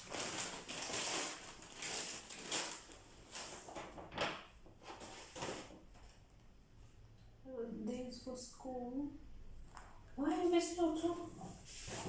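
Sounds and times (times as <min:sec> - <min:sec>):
grocery packaging rustling: 0:00.0 - 0:06.2.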